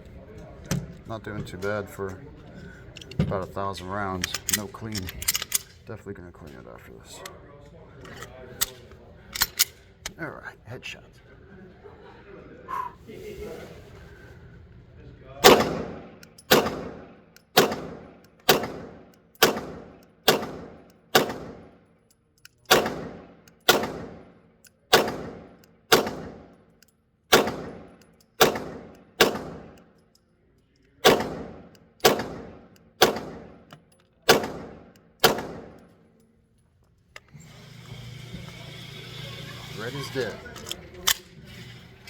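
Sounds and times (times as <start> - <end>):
pistol shots with echo: 15.4 - 21.8, 22.7 - 26.6, 27.3 - 29.9, 31.0 - 33.7, 34.3 - 35.9.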